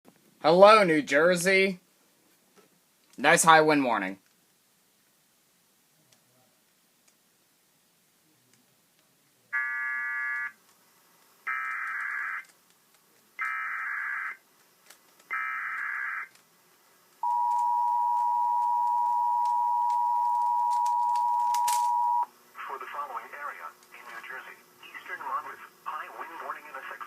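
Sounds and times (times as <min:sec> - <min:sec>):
digital data bursts: 0:11.5 - 0:12.5
steady attention tone: 0:17.2 - 0:22.3.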